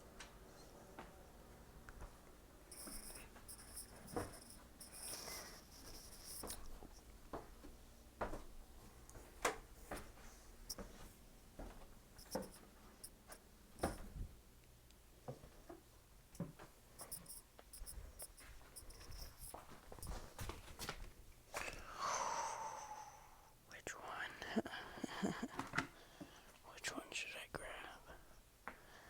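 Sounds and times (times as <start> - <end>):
faint low hum: 0.0 - 15.0, 16.2 - 20.7
rubbing and rustling: 2.7 - 6.9.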